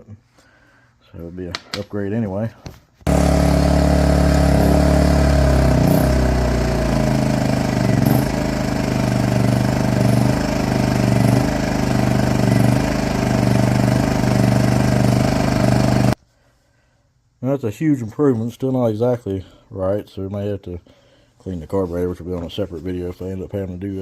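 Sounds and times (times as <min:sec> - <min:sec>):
generator engine running: 0:03.1 - 0:16.2.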